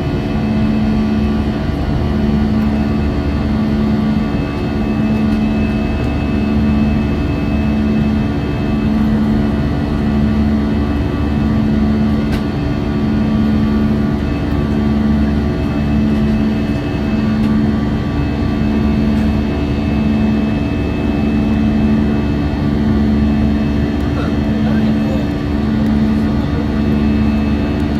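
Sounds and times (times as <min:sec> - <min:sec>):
aircraft engines droning: 0:00.0 - 0:27.9.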